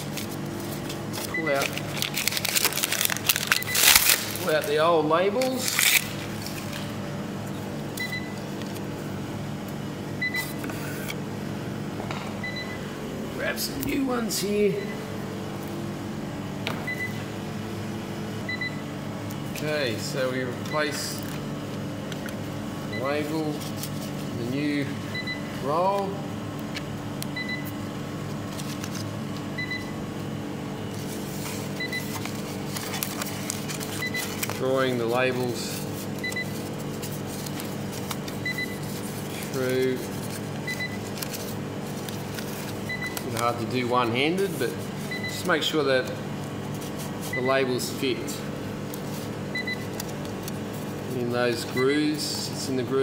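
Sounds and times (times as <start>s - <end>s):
paper rustling: 0.0s - 7.6s, 23.2s - 24.9s, 28.3s - 29.5s, 30.9s - 47.9s, 48.8s - 51.8s
steady electrical hum: 0.0s - 53.0s
label roll clicks and rustles: 30.9s - 34.9s.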